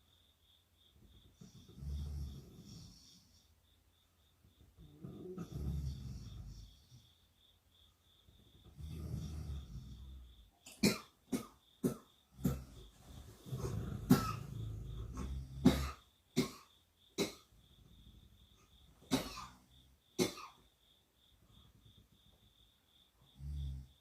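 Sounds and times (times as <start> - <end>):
person snoring: 1.4 - 3.4, 4.8 - 6.9, 8.7 - 10.3, 12.4 - 15.8, 23.4 - 24.0
person coughing: 10.7 - 12.7, 13.6 - 14.6, 15.6 - 17.5, 19.1 - 19.6, 20.2 - 20.6.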